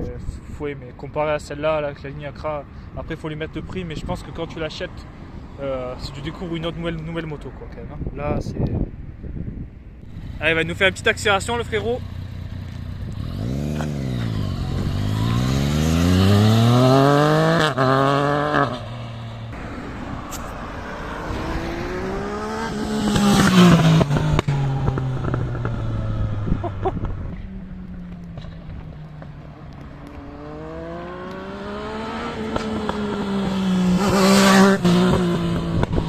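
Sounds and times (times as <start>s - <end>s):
motorcycle engine revving: 10.0s - 36.0s.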